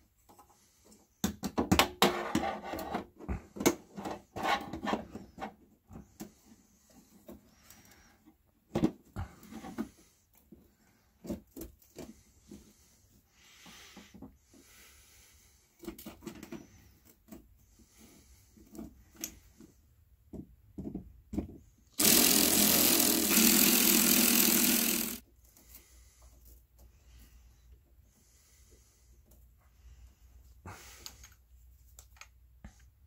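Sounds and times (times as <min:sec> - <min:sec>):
handheld power tool running: 0:22.0 - 0:25.2.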